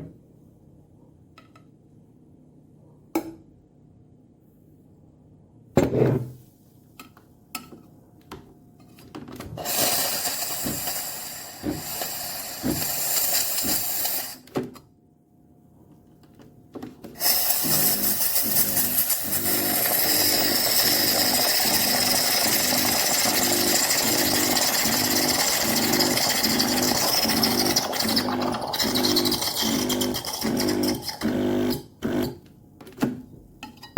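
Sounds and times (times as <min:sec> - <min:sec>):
steam wand hissing: 0:09.6 - 0:14.4, 0:17.2 - 0:30.7
pump buzzing in pulses: 0:17.2 - 0:32.3.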